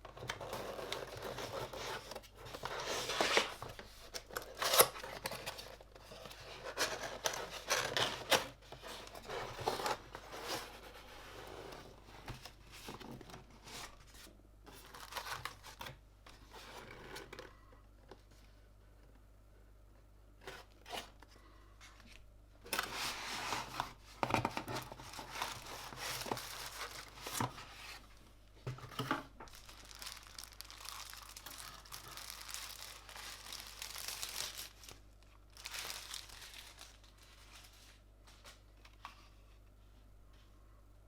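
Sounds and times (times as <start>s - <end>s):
packaging wrap crinkling: 24.8s - 27.7s, 29.4s - 38.0s.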